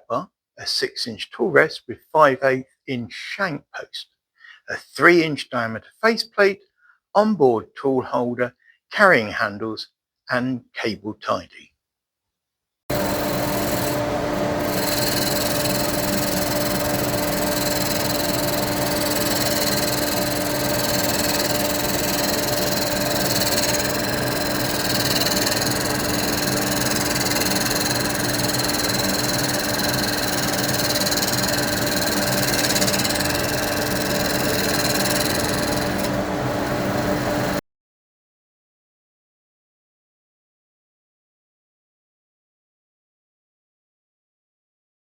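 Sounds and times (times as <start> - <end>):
lathe motor hum: 12.9 - 37.6
tool shaving wood hiss: 12.9 - 37.6.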